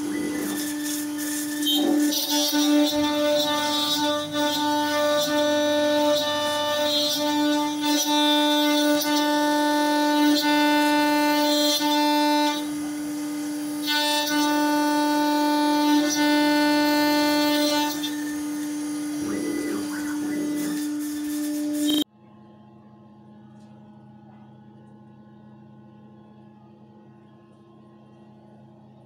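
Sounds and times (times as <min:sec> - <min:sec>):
milling machine cutting metal: 0:00.0 - 0:22.0.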